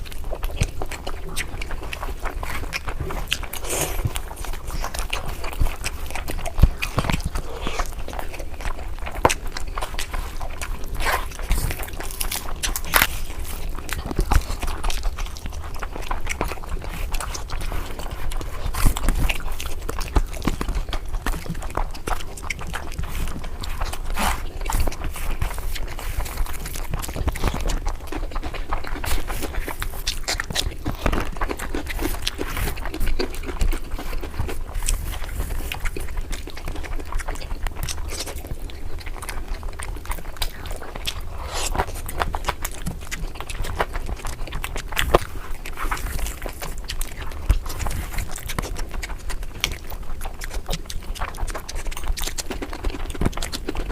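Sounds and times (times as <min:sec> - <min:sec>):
chewing and mouth smacking: 0:00.0 - 0:53.9.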